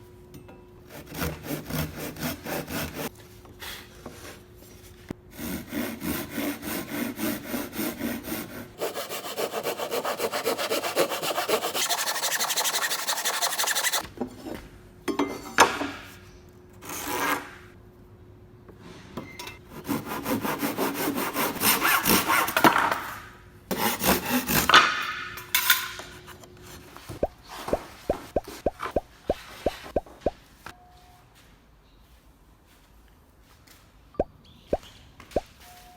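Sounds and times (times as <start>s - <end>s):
hand saw cutting wood: 0.9s - 3.1s, 5.3s - 14.0s, 16.8s - 17.5s, 19.7s - 23.1s, 23.7s - 25.1s.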